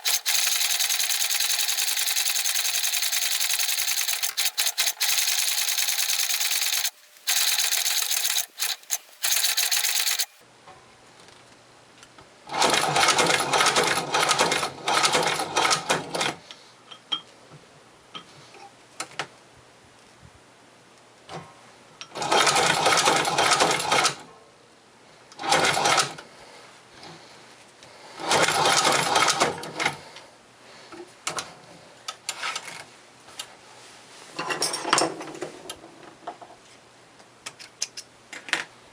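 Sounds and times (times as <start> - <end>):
sewing machine clattering: 0.0 - 10.4.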